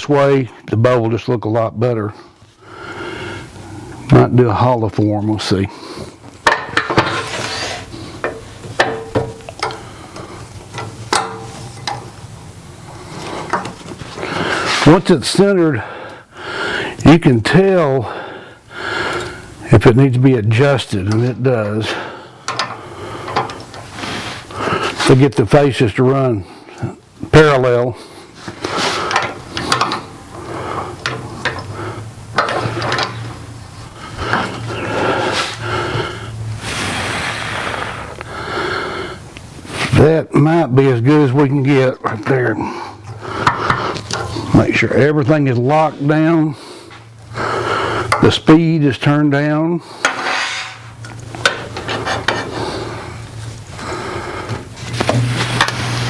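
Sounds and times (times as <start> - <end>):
wooden clunks and rubbing: 6.4 - 7.4, 50.0 - 52.6.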